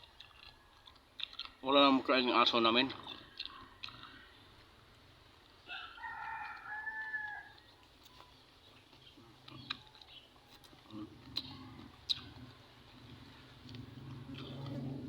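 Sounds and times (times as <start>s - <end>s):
rooster crowing: 5.7s - 7.7s.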